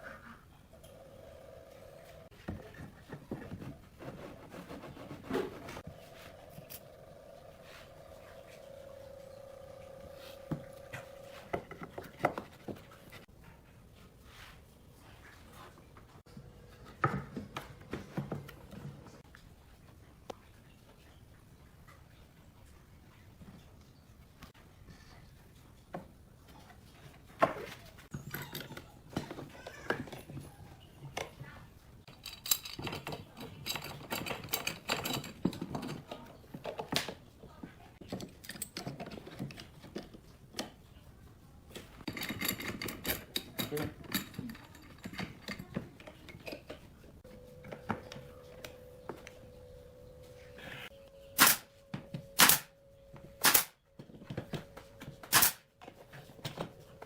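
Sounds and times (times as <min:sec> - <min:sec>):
scraping or rustling: 0:02.2 - 0:06.9
faint steady hum: 0:05.8 - 0:13.6, 0:45.6 - 0:57.0
wood and tools tapping: 0:10.4 - 0:13.2.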